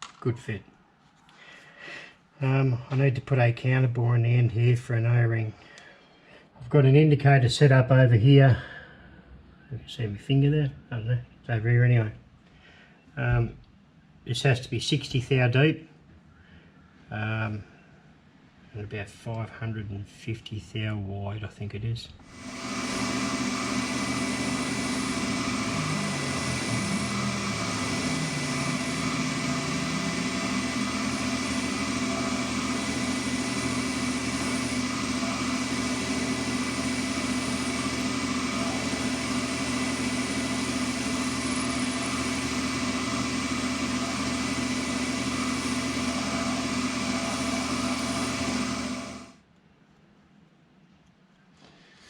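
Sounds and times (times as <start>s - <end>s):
metal lathe cutting steel: 22.3s - 49.4s.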